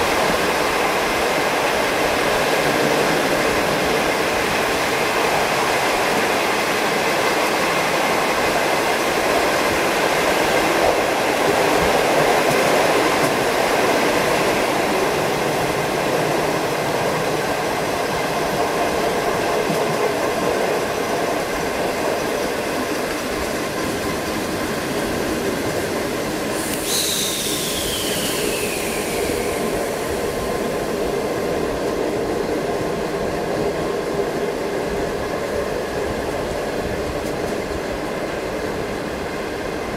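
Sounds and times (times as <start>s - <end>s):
train wheels on rails: 0.0s - 39.9s
hiss with falling high tone: 26.5s - 31.1s.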